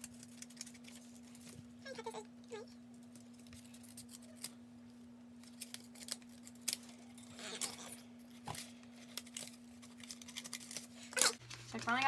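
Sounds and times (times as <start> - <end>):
steady low hum: 0.0 - 12.0
scissors snipping paper: 3.4 - 4.6, 5.4 - 11.4
paper rustle: 8.4 - 12.0.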